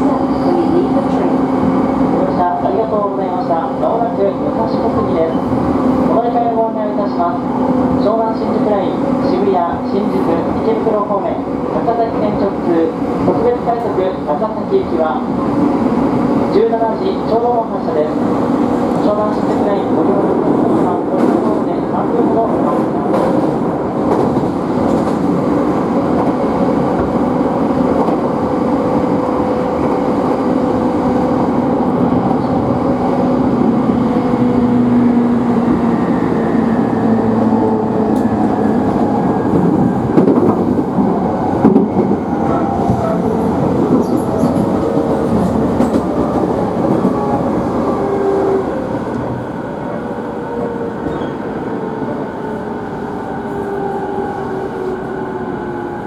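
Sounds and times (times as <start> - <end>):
train wheels rumbling and clicking: 18.1 - 56.0.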